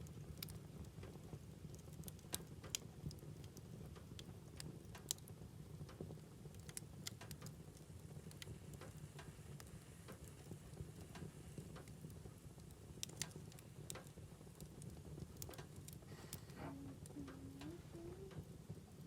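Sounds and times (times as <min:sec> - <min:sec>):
low rumble of flames: 0:00.0 - 0:19.0
wood fire crackling: 0:00.0 - 0:19.0.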